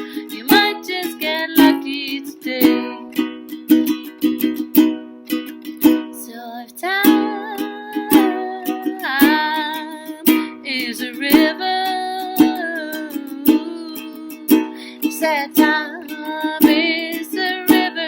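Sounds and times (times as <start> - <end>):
person singing wordlessly: 0.0 - 3.2, 6.2 - 18.0
strummed small stringed instrument: 0.0 - 18.0.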